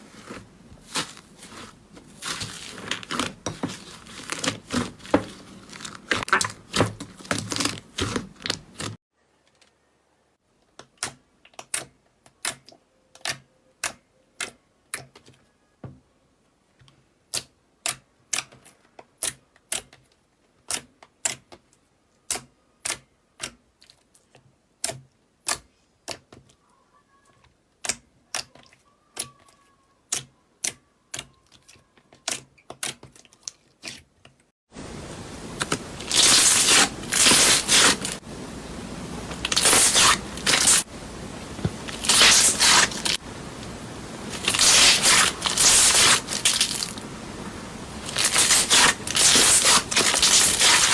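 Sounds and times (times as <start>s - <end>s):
crackling and scraping: 0.0s - 9.8s, 35.6s - 38.2s, 39.2s - 40.9s, 41.5s - 47.1s, 48.0s - 50.9s.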